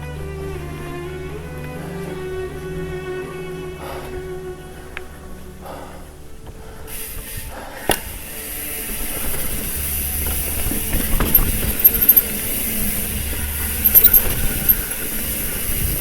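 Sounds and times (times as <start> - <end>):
tyre and wind rumble: 6.3 - 16.0
bike clattering over bumps: 8.8 - 16.0.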